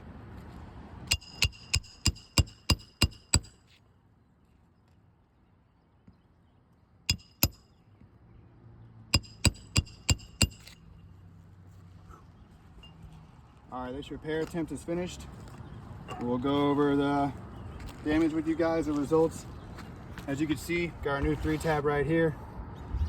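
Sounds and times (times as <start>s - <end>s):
hammer striking nails: 1.1s - 3.6s, 7.1s - 7.7s, 9.2s - 10.8s.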